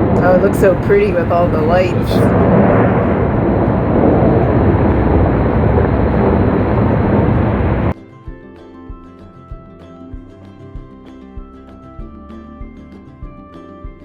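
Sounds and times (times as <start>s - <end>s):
fountain water jets rushing: 0.0s - 7.9s
quiet music: 0.0s - 14.0s.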